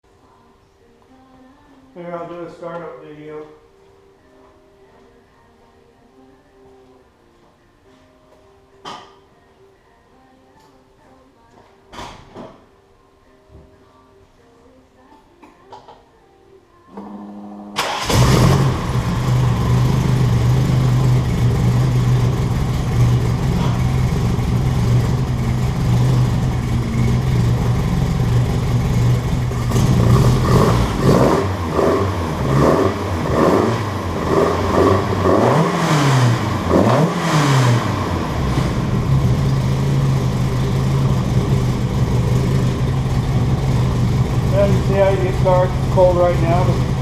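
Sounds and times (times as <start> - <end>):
car engine idling: 17.8 - 47.0
engine revving: 17.8 - 47.0.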